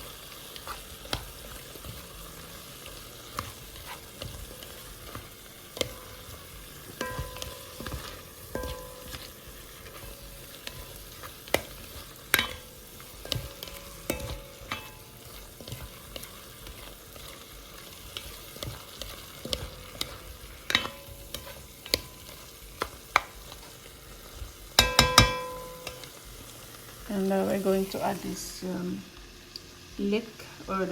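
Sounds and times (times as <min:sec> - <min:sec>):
meat sizzling in a frying pan: 0:00.0 - 0:30.9
utensil clicking against pan: 0:17.9 - 0:23.8.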